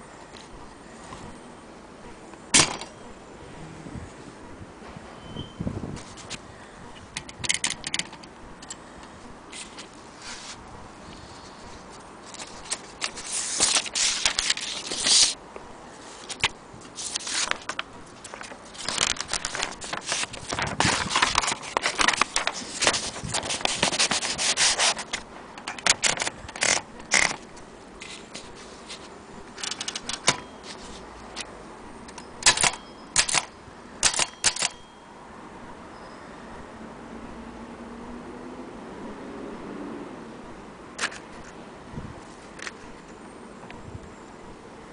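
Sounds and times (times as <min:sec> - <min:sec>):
typewriter mechanism clicking: 0:02.6 - 0:03.0, 0:07.2 - 0:08.8, 0:24.9 - 0:27.5, 0:29.6 - 0:30.4, 0:32.1 - 0:34.8.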